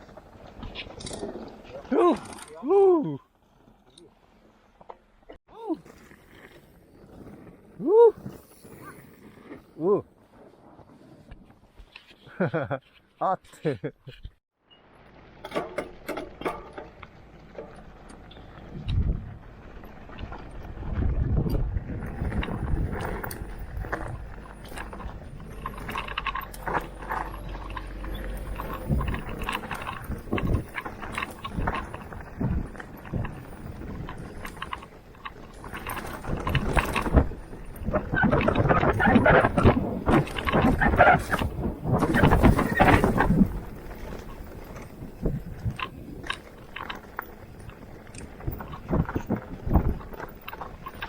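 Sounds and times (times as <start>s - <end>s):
bike clicks and rattles: 0.0s - 2.6s, 15.1s - 51.0s
bike tyres crunching on dirt: 0.0s - 2.7s, 3.3s - 13.2s, 14.8s - 51.0s
wind on microphone: 18.6s - 51.0s.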